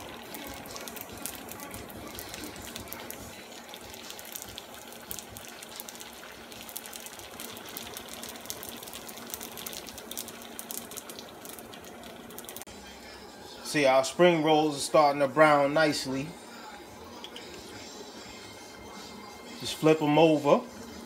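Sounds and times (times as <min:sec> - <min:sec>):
deep-frying sizzle and crackle: 0:00.0 - 0:12.7.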